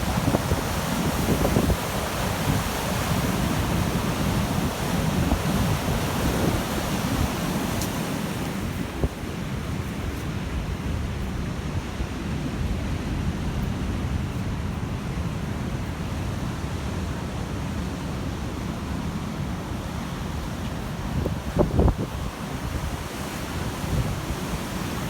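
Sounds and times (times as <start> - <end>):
sea waves breaking: 0.0 - 15.4, 16.1 - 25.0
wind rumbling on microphone: 0.0 - 18.7, 19.4 - 25.0.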